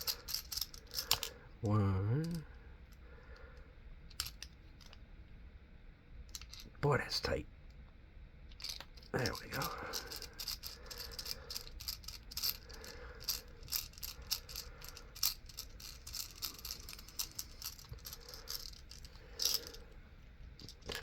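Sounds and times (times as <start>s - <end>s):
metal clicks and rattles: 0.0s - 1.4s, 6.3s - 6.7s, 8.5s - 19.8s.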